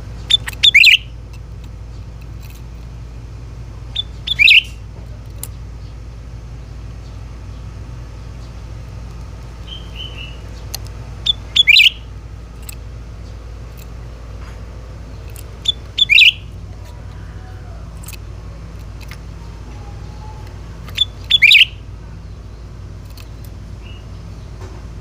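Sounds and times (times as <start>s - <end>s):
steady low hum: 0.0s - 25.0s
bird calling sharply: 0.2s - 1.2s, 3.9s - 4.9s, 9.6s - 12.1s, 15.5s - 18.2s, 19.3s - 22.4s.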